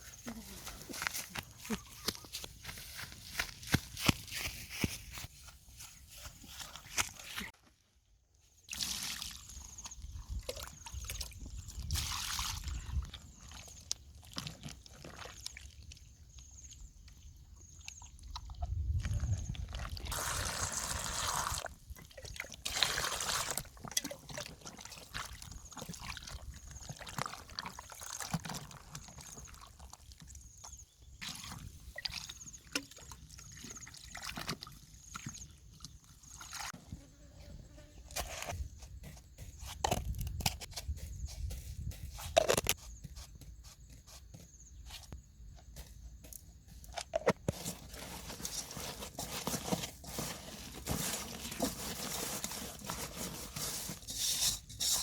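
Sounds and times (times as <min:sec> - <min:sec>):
water pouring and sloshing: 0:08.6 - 0:36.8, 0:46.9 - 0:55.0.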